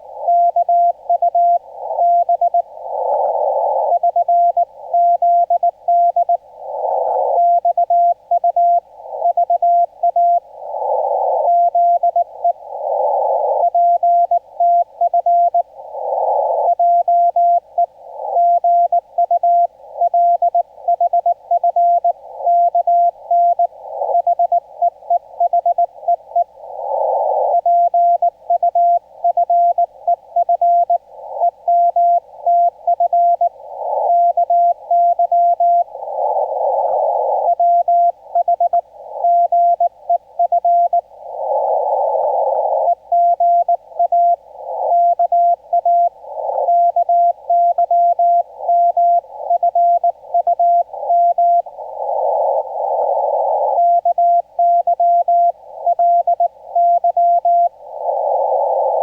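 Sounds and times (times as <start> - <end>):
radio hiss: 0.0 - 59.0
morse code tone: 42.9 - 51.7, 53.8 - 57.7.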